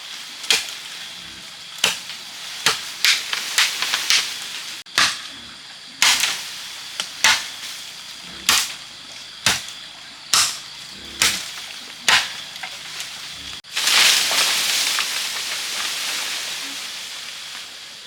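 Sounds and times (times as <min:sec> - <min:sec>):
blade chopping bamboo: 0:00.4 - 0:00.9, 0:01.8 - 0:05.4, 0:06.0 - 0:07.7, 0:08.4 - 0:08.8, 0:09.4 - 0:13.2.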